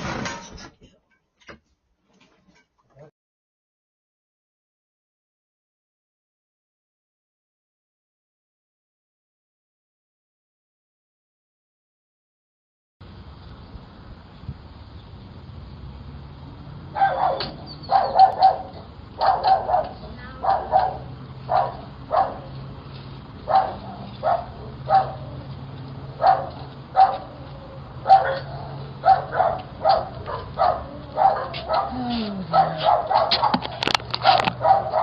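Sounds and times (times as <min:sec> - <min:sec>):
dog barking: 0:17.0 - 0:22.6, 0:23.4 - 0:25.4, 0:26.2 - 0:35.0.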